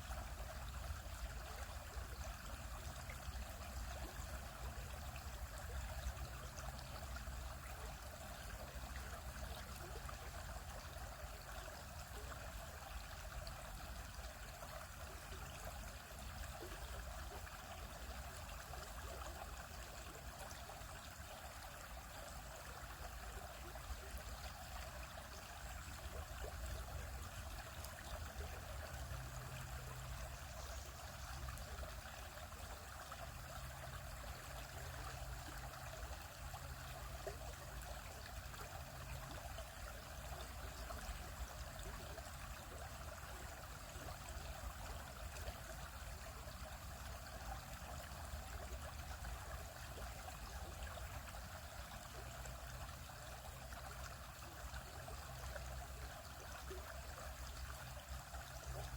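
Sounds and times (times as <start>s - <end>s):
stream flowing over rocks: 0.0s - 58.9s.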